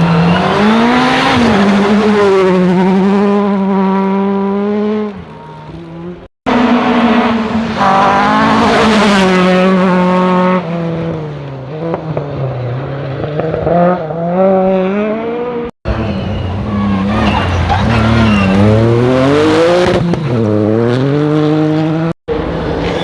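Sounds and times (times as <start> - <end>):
rally car engines at full throttle: 0.0 - 23.0.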